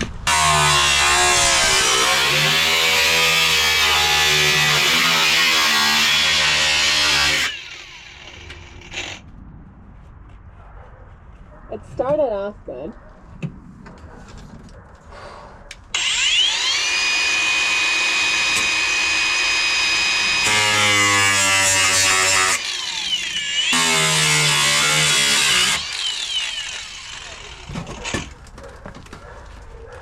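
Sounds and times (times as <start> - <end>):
cutting tool cutting sheet metal: 0.3 - 9.2, 16.0 - 28.4
power cutting tool whining: 0.3 - 9.2, 15.9 - 28.3.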